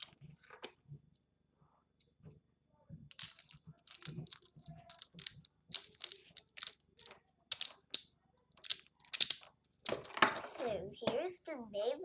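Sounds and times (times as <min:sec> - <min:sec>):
plastic parts clicking and scraping: 0:03.1 - 0:10.6.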